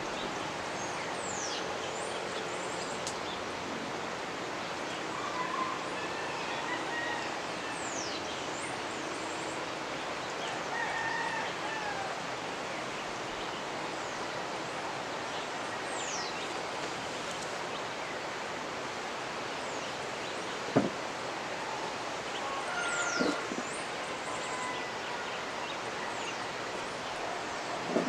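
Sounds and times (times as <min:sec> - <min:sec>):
river rushing: 0:00.0 - 0:28.0
birds calling: 0:19.6 - 0:28.0
sharp knock: 0:20.8 - 0:21.0.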